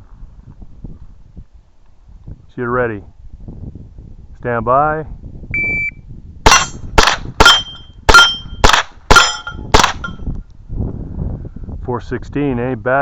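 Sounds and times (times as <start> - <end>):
shot timer beep: 5.6 - 6.7
rifle shots: 6.5 - 10.2
steel targets ringing: 6.5 - 10.3.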